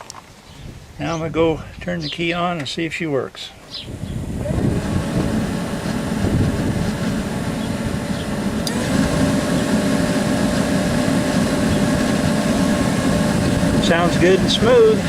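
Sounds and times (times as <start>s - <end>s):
heater blower fan whining: 3.6s - 15.0s
low steady rumble: 3.8s - 15.0s.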